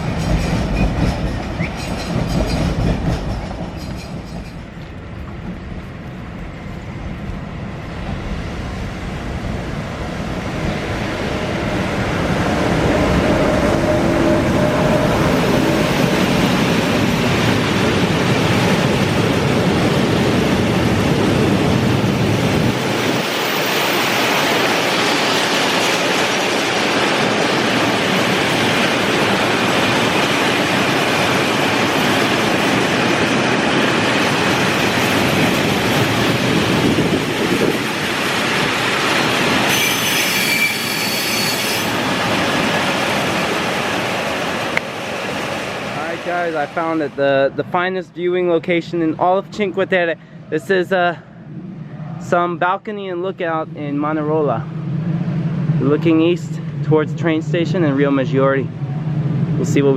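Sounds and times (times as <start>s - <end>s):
train rumbling on rails: 0.0s - 47.9s, 48.6s - 59.9s
high-pitched wheel squeal: 39.7s - 42.0s.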